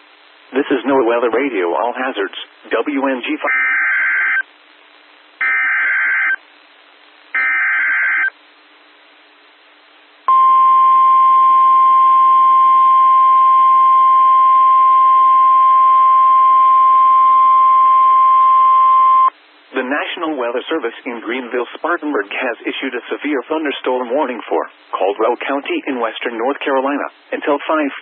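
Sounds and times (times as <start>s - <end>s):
radio hiss: 0.0s - 5.4s, 19.3s - 28.0s
steady warning alarm tone: 5.4s - 6.4s, 7.4s - 8.3s, 10.3s - 19.3s.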